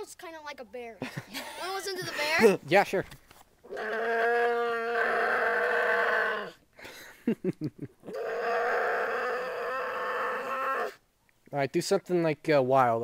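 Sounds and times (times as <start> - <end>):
person grunting: 3.7 - 6.5
person imitating a bear call: 3.7 - 6.6, 8.0 - 11.0.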